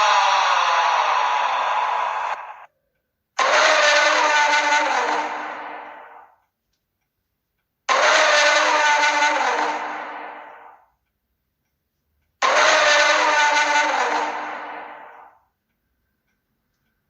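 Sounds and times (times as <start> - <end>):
distorted siren-like blare: 3.4 - 6.3, 7.9 - 10.8, 12.4 - 15.3.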